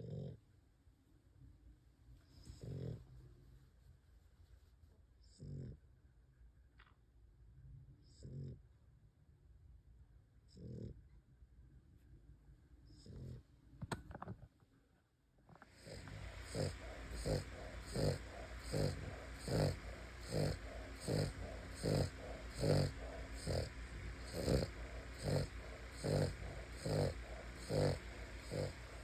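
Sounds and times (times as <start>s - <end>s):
dog snoring: 0.0s - 0.4s, 2.3s - 3.1s, 5.2s - 5.8s, 8.0s - 8.6s, 10.5s - 11.0s, 12.9s - 13.5s, 15.6s - 29.0s.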